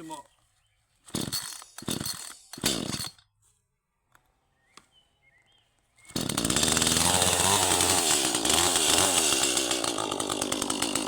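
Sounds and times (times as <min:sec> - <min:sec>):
chainsaw running: 0:01.1 - 0:03.2, 0:06.1 - 0:11.0.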